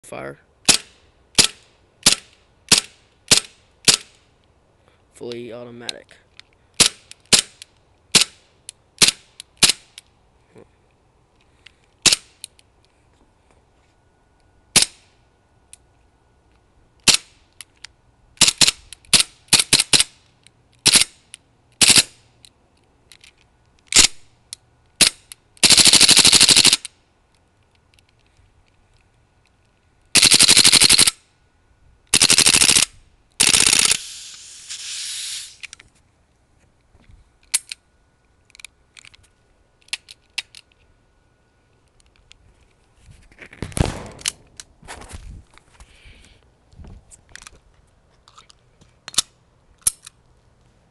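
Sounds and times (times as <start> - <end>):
gas hissing spurt: 33.9 - 35.6
airsoft pistol shots: 43.8 - 44.5.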